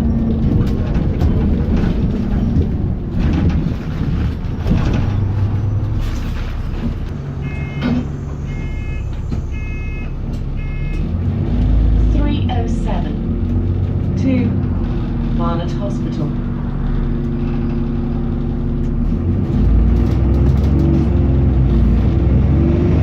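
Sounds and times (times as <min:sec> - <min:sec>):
bus engine and road noise: 0:00.0 - 0:23.0
short warning beeps: 0:07.4 - 0:11.0.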